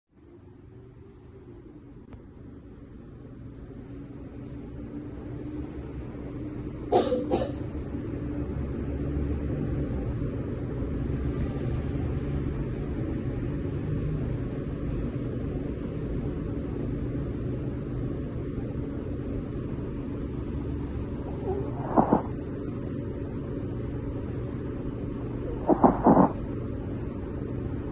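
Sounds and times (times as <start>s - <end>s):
dog snoring: 21.2s - 22.4s, 25.2s - 26.4s.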